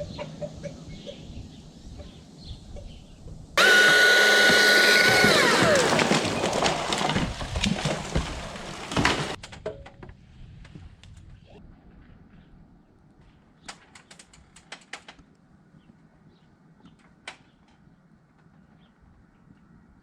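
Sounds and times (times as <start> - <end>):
chainsaw cutting wood: 3.6 - 9.4.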